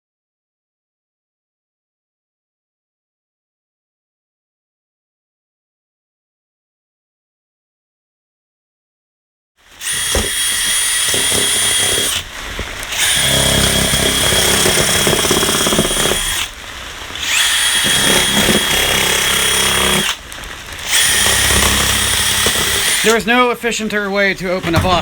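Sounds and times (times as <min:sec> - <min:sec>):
power drill motor whining: 0:09.7 - 0:23.4.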